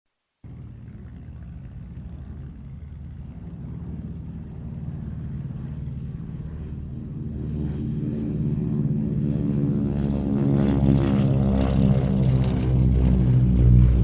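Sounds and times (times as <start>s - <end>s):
propeller plane engines rumbling: 0.4s - 14.0s.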